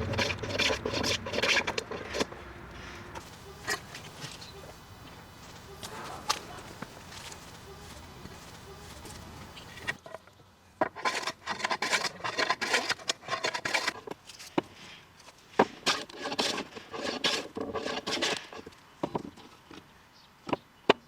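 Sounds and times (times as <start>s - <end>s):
tool scraping wood: 0.0s - 4.3s, 10.8s - 14.7s, 15.6s - 18.7s.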